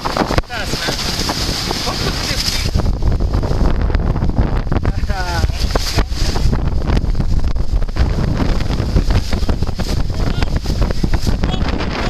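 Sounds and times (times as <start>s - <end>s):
rushing water: 0.0s - 12.0s
wind buffeting microphone: 0.0s - 12.0s.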